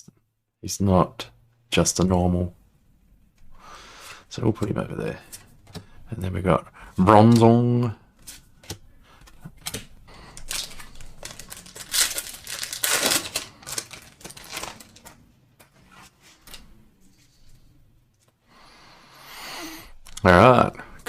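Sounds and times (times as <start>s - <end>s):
foil wrapper tearing and crinkling: 10.4s - 15.0s.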